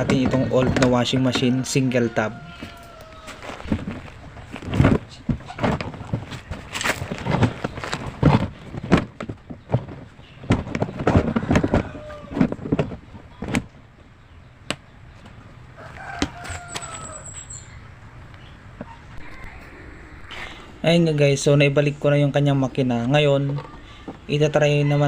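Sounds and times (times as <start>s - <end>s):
rooster crowing: 0.6s - 3.7s, 11.3s - 12.5s, 15.8s - 17.7s.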